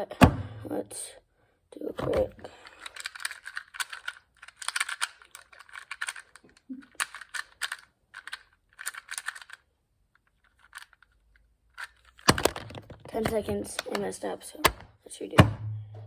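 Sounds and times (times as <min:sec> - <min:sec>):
speed cube plastic clicking: 0:02.1 - 0:14.9.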